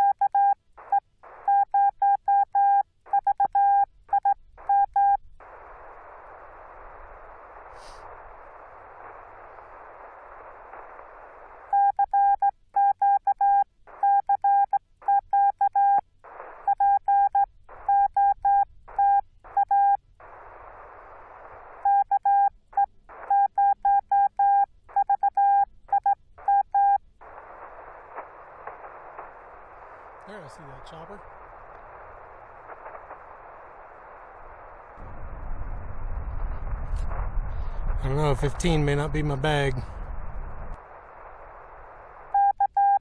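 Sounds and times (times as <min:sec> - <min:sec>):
radio receiver hiss: 0:00.8 - 0:01.6, 0:04.6 - 0:11.8, 0:16.2 - 0:17.0, 0:17.6 - 0:22.2, 0:22.8 - 0:23.5, 0:26.4 - 0:43.0
morse code beeping tone: 0:23.3 - 0:27.0.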